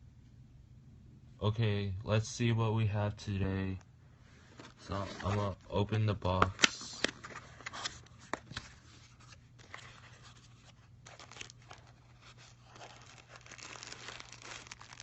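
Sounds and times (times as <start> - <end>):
packaging scraping and tearing: 4.6 - 5.5, 6.5 - 15.0.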